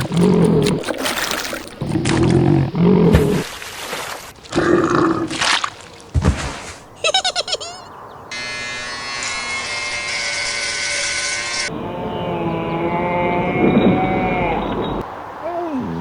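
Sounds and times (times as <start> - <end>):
squeaky chirps: 7.0 - 8.0
steady electric buzz: 8.3 - 11.7.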